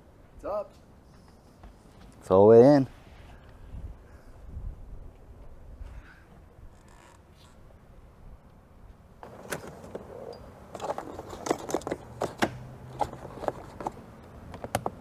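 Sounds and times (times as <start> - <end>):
car door clicks and knocks: 9.2 - 15.0
power window motor humming: 9.2 - 15.0.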